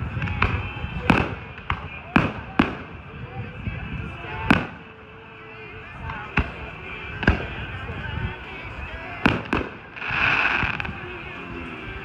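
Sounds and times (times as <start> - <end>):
fireworks bangs: 0.0 - 3.5, 4.1 - 5.0, 5.9 - 8.1, 9.1 - 12.0
fireworks hissing and crackling: 0.0 - 12.0.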